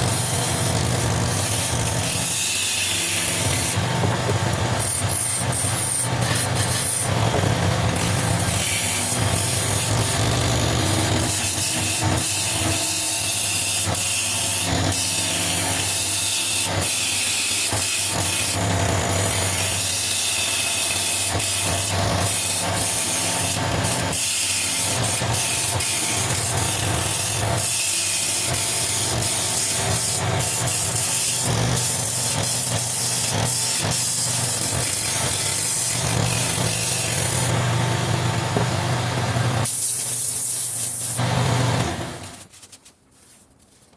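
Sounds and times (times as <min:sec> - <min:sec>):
tool scraping spinning wood: 0:00.0 - 0:12.8
lathe motor hum: 0:16.4 - 0:39.7.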